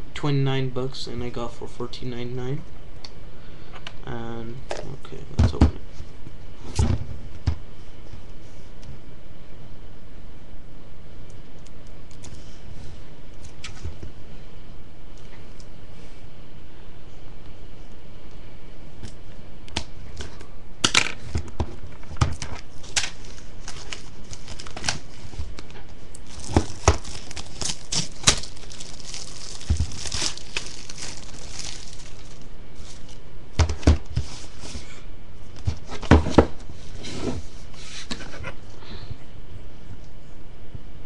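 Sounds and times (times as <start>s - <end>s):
plastic shrink-wrap crinkling: 22.9s - 33.2s
packaging clicks and knocks: 26.3s - 32.0s.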